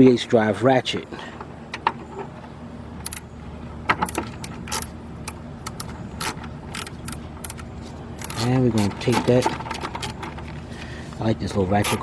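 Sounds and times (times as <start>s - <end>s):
steady low hum: 0.0s - 12.0s
ratchet metallic clicks: 3.0s - 3.3s, 3.9s - 10.6s, 11.8s - 12.0s.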